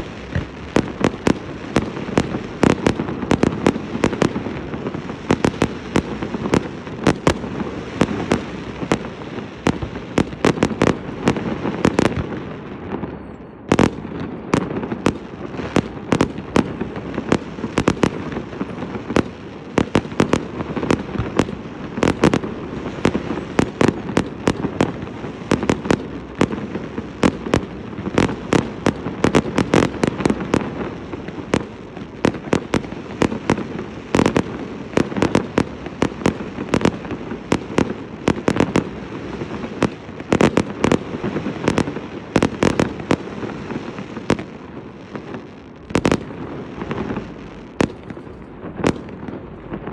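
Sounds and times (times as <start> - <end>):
fireworks bangs: 0.0 - 49.9.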